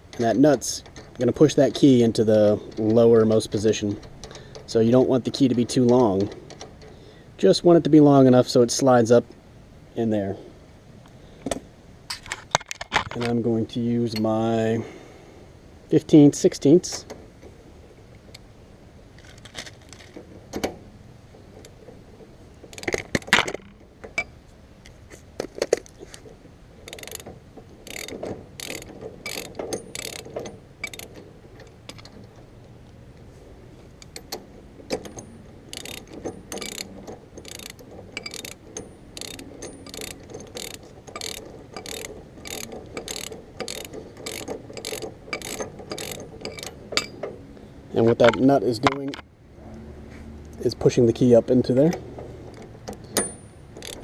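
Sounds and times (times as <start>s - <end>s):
ratchet wrench clicking: 22.7s - 23.2s, 26.8s - 31.2s, 35.0s - 47.1s, 53.2s - 54.0s
metal clunks: 34.0s - 47.4s, 51.8s - 54.0s.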